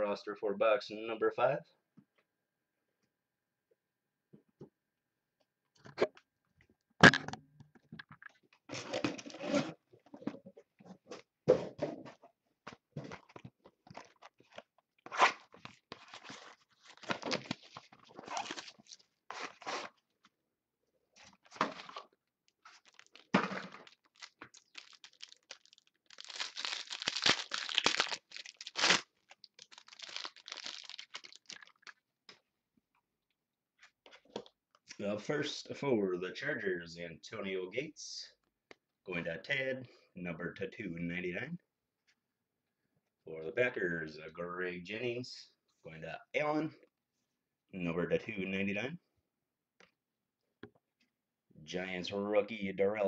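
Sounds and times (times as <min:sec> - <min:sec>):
packaging torn and crinkled: 0:16.0 - 0:19.1, 0:22.6 - 0:32.0.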